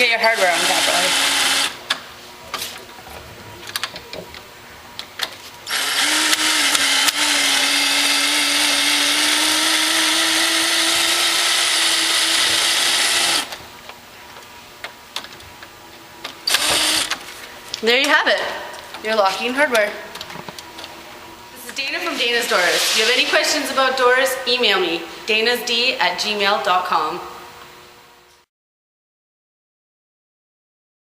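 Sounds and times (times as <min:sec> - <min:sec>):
power drill motor running: 0:00.0 - 0:01.8, 0:05.7 - 0:13.6, 0:16.4 - 0:17.2.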